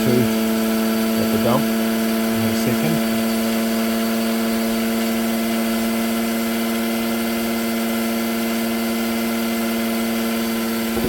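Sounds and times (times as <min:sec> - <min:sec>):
turbine generator humming: 0:00.0 - 0:11.0.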